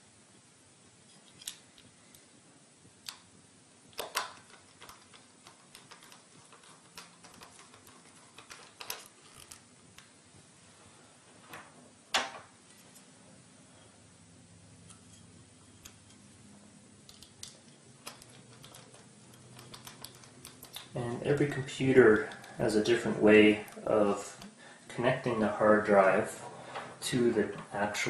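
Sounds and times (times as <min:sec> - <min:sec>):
screws being fastened clicking: 0:04.0 - 0:10.1, 0:17.1 - 0:21.0.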